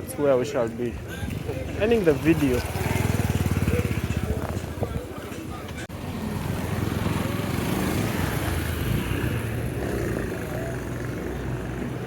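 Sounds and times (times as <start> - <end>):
road noise: 0.0 - 12.0.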